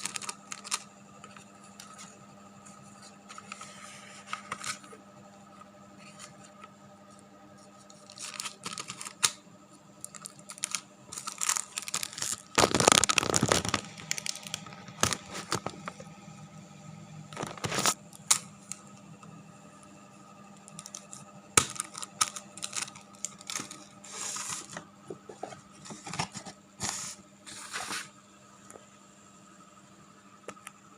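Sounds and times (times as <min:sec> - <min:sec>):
handling rustles and scrapes: 0:00.0 - 0:09.3, 0:10.1 - 0:16.0, 0:20.7 - 0:28.2
steady low hum: 0:00.0 - 0:30.9.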